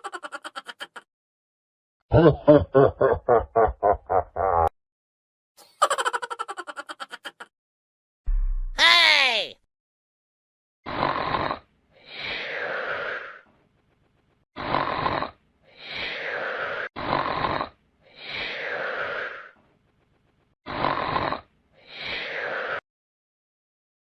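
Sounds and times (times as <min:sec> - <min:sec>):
loud rasping snore: 0:10.8 - 0:13.5, 0:14.6 - 0:19.6, 0:20.6 - 0:22.8.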